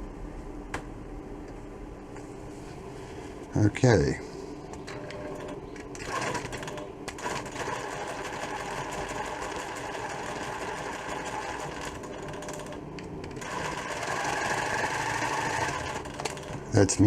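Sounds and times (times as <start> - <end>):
sewing machine running: 5.4 - 16.6.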